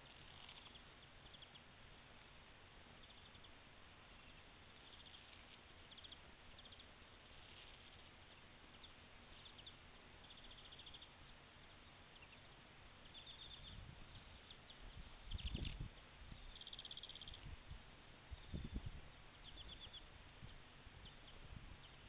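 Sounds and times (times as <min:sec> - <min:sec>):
faint outdoor hiss: 0:00.0 - 0:22.0
high-pitched chirping trills: 0:03.0 - 0:03.5, 0:04.1 - 0:17.6, 0:18.3 - 0:22.0.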